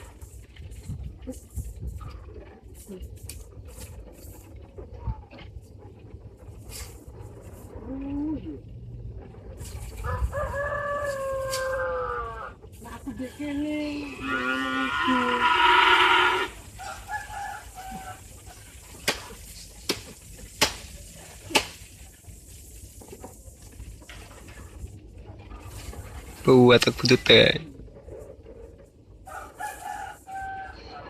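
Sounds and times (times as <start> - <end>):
rooster crowing: 10.0 - 12.6, 14.2 - 18.3, 29.2 - 31.0
cattle mooing: 13.8 - 16.6
sharp knocks: 19.0 - 20.8.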